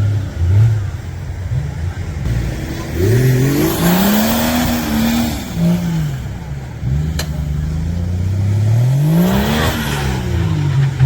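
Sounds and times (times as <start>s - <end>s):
car engine revving: 0.0s - 11.0s
rushing noise: 9.1s - 11.0s.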